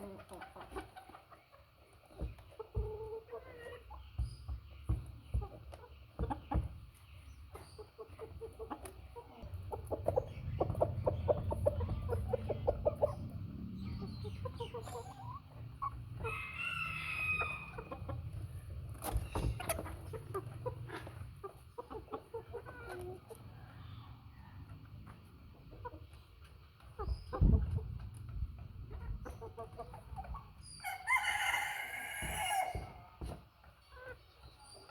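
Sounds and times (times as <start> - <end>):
hens clucking: 0.0 - 34.9.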